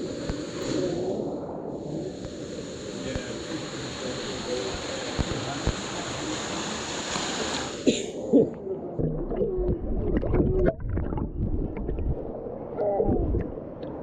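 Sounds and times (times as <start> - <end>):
falling water hissing: 0.0 - 8.3
underwater gurgling and bubbling: 8.8 - 14.0.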